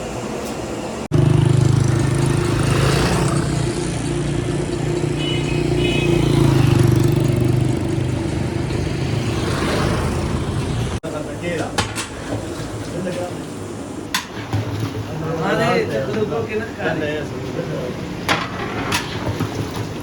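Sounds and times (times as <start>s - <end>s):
engine humming steadily: 0.0s - 15.1s.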